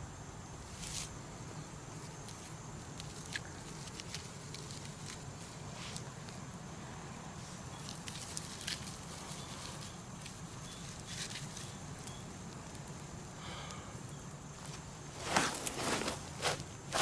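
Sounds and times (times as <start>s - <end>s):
faint clicks and rustles: 1.9s - 6.4s, 7.4s - 13.1s.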